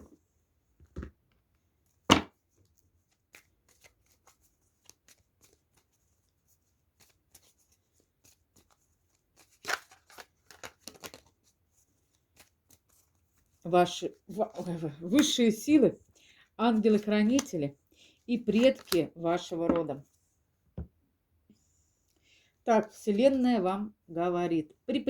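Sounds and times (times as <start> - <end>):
cards shuffling: 3.1 - 6.0, 7.0 - 11.5, 14.3 - 15.5, 18.4 - 19.9.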